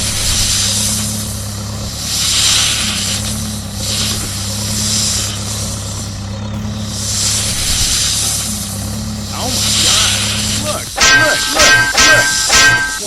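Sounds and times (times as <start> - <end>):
low engine-like hum: 0.0 - 13.0
pulsing hiss: 0.0 - 13.0.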